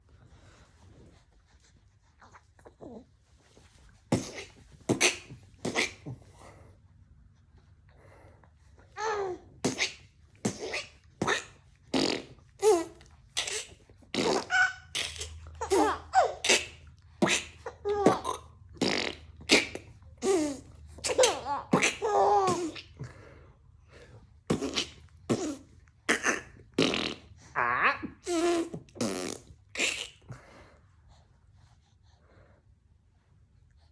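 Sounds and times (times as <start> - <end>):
person making fart-like mouth noises: 4.1 - 6.3, 9.5 - 23.1, 24.5 - 30.4
baby laughing: 12.2 - 18.5, 19.4 - 23.0.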